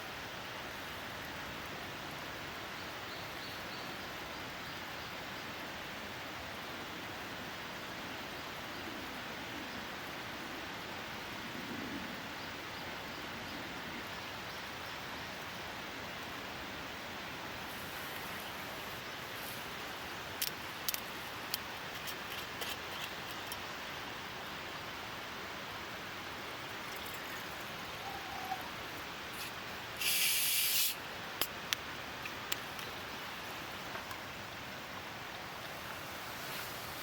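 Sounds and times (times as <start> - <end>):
light rain hissing: 0.0 - 37.0
loud hiss: 17.6 - 21.5, 25.6 - 31.7, 35.6 - 37.0
sharp ticks and pops: 20.3 - 23.7, 29.3 - 33.0.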